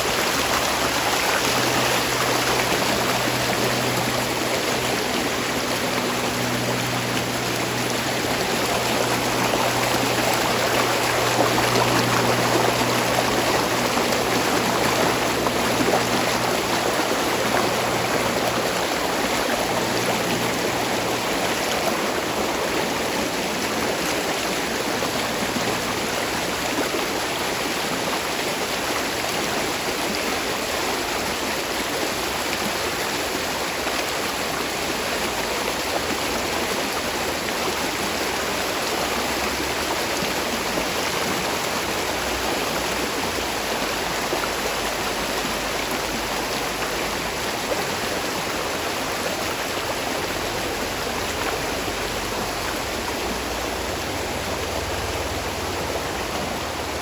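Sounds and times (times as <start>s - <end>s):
low steady hum: 0.0s - 27.3s
stream rushing over rocks: 0.0s - 57.0s.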